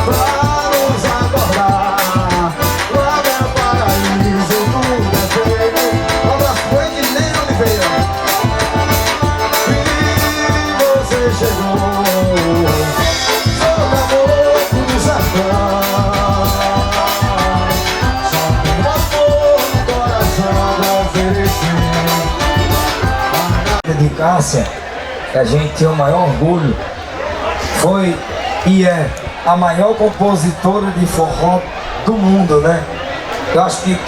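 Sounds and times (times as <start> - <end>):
accordion melody: 0.0 - 23.9
fast percussion beat: 0.0 - 23.9
bass: 0.0 - 24.2.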